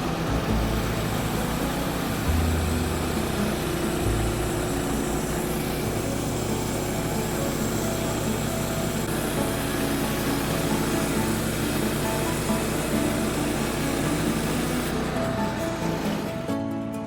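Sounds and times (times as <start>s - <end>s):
sawmill engine droning: 0.0s - 16.7s.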